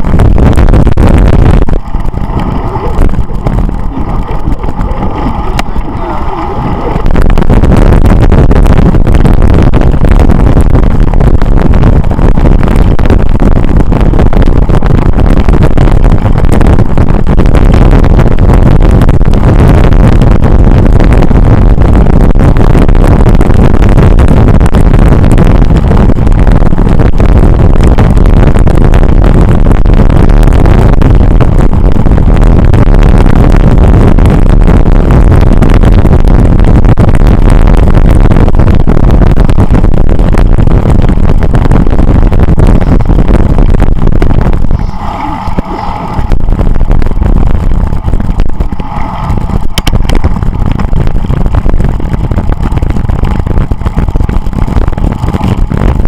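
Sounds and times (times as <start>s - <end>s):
bicycle riding noise: 0.0s - 18.1s, 44.5s - 56.0s
faint steady whine: 0.0s - 56.0s
wind buffeting microphone: 0.0s - 56.0s.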